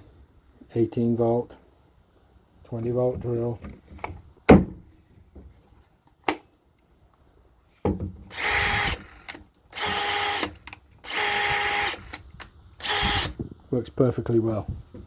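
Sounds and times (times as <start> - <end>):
drill motor whine: 8.3 - 10.5, 11.1 - 12.2, 12.8 - 13.4.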